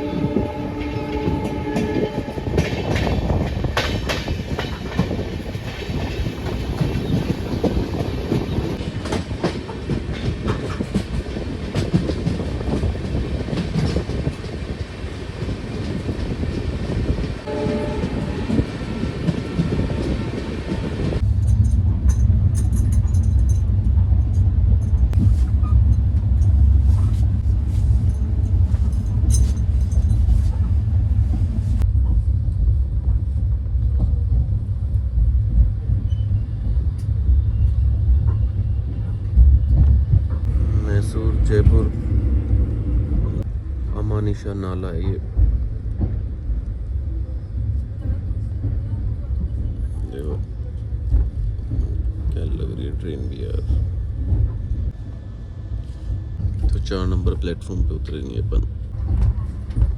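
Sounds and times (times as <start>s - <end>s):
train horn: 0.0s - 2.9s, 17.5s - 18.7s
train wheels clattering on rails: 1.2s - 42.6s
heavy low rumble: 11.3s - 59.9s.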